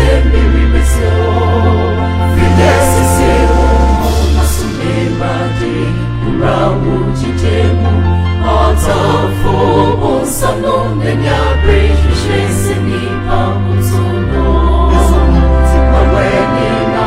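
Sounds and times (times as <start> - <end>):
choir singing gospel: 0.0 - 17.0
heavy bass line: 2.1 - 5.5.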